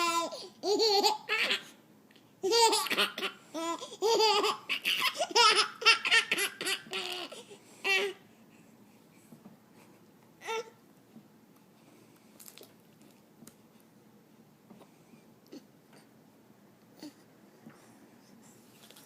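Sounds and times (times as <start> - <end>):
baby laughing: 0.0 - 1.8, 2.4 - 8.2.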